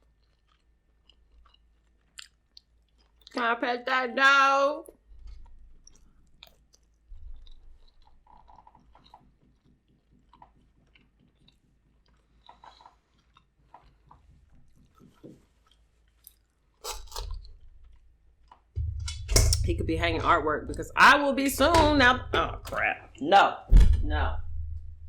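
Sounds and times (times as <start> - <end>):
person chewing food: 0.0 - 3.4, 4.9 - 18.8.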